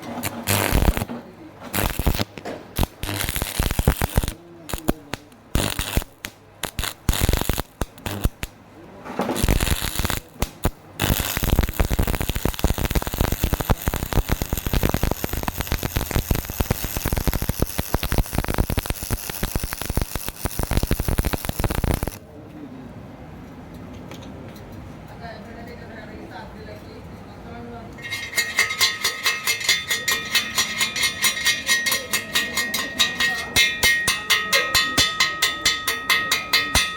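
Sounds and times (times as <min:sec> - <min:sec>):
welding arc crackling: 0:00.0 - 0:01.1, 0:01.7 - 0:08.6, 0:09.4 - 0:22.2.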